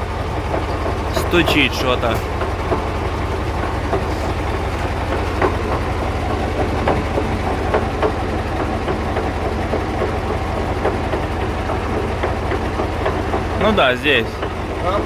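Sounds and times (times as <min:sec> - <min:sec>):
diesel truck engine running: 0:00.0 - 0:15.0
metallic knocks from axle: 0:00.5 - 0:15.0.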